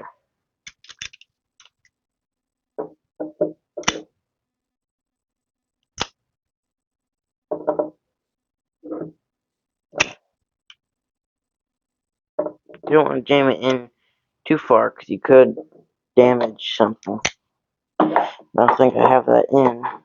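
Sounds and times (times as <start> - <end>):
sharp click: 3.8 - 4.1.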